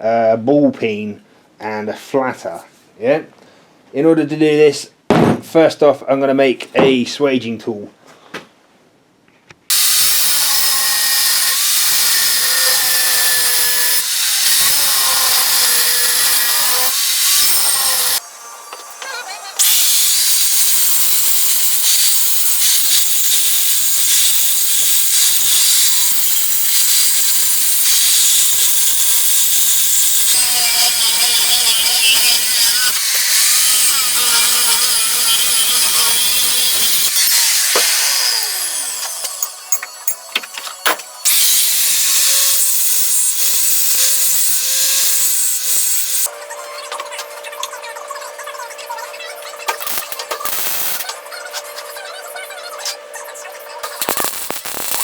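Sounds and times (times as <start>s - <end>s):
angle grinder cutting steel: 9.7s - 46.3s, 49.7s - 51.2s, 53.8s - 55.0s.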